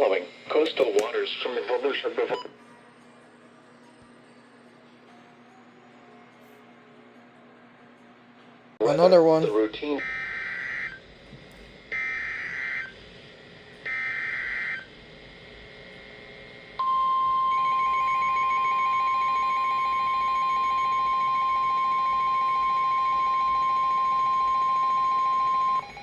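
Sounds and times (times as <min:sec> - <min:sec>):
steady warning alarm tone: 0:09.6 - 0:11.2, 0:11.9 - 0:13.0, 0:13.8 - 0:15.5, 0:16.8 - 0:26.0.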